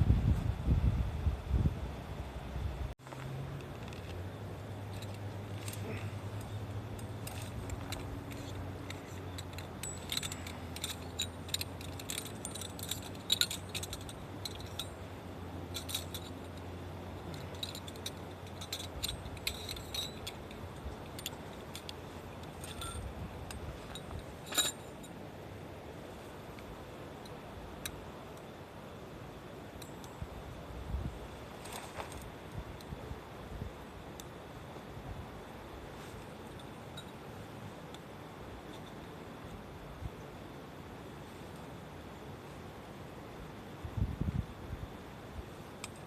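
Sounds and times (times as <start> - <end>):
steady low hum: 0.0 - 46.0
metallic clinking and jingling: 3.8 - 25.6, 29.6 - 32.6, 36.0 - 39.8, 45.5 - 46.0.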